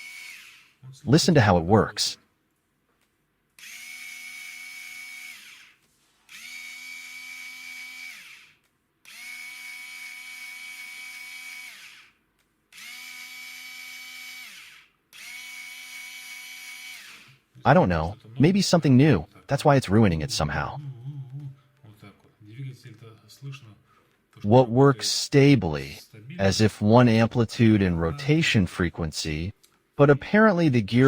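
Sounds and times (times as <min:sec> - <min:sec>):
cordless screwdriver whining: 0:00.0 - 0:00.8, 0:03.6 - 0:12.1, 0:12.7 - 0:17.4.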